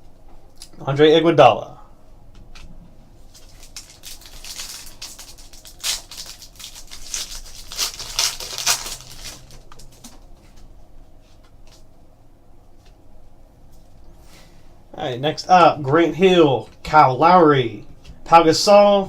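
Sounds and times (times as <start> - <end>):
cards being handled: 3.3 - 10.2
wrapper crinkling and rustling: 3.3 - 10.2
card pack wrapper tearing: 3.4 - 10.0.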